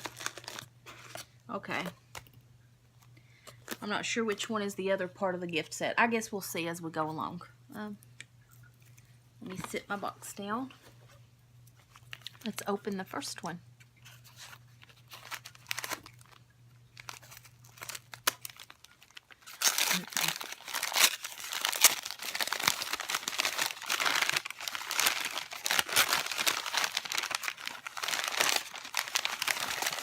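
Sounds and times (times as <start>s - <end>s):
packaging crinkling and tearing: 0.0s - 1.3s, 11.7s - 12.6s, 13.8s - 30.0s.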